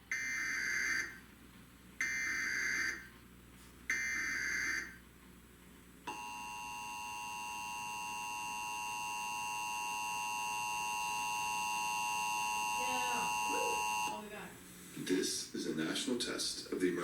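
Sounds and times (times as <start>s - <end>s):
two-tone attention signal: 6.1s - 14.2s.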